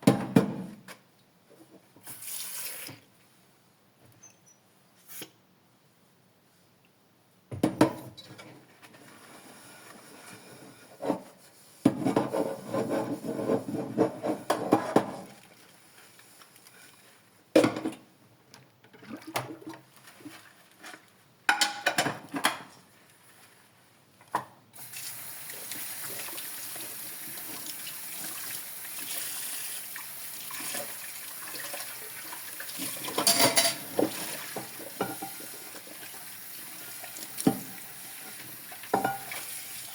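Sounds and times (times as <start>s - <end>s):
dishes clinking: 21.5s - 22.2s, 33.1s - 34.0s
water splashing in sink: 24.8s - 39.9s.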